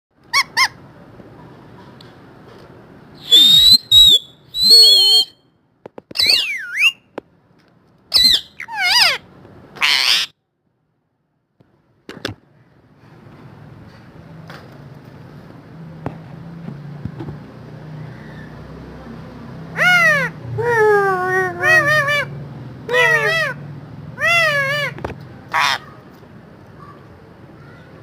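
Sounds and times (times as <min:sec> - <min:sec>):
parrot squawking and whistling: 0:00.3 - 0:00.8, 0:03.2 - 0:05.4, 0:06.2 - 0:07.1, 0:08.1 - 0:09.2, 0:09.8 - 0:10.3, 0:19.8 - 0:23.6, 0:24.2 - 0:25.8.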